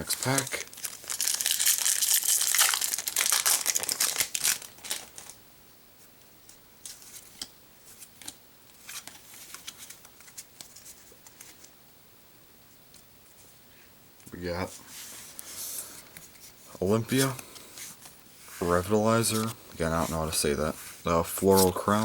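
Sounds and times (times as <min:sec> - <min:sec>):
foil pack tearing and crinkling: 0:00.0 - 0:05.4.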